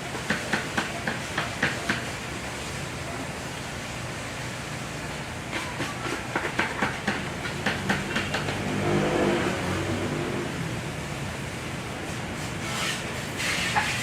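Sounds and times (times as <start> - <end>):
steady hiss: 10.4 - 14.0.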